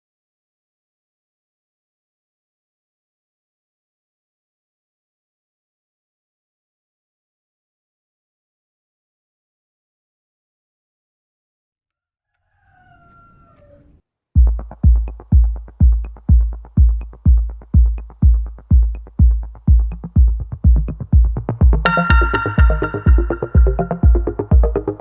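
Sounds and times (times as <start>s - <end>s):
heavy kick drum: 14.4s - 25.0s
bright synthesizer chord: 21.8s - 25.0s
gliding electronic call: 21.9s - 25.0s.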